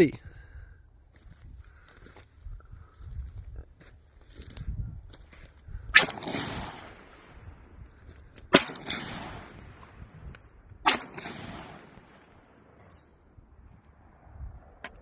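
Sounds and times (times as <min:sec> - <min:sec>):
gunshots with echo: 0:06.0 - 0:07.4, 0:08.5 - 0:10.0, 0:10.8 - 0:12.6.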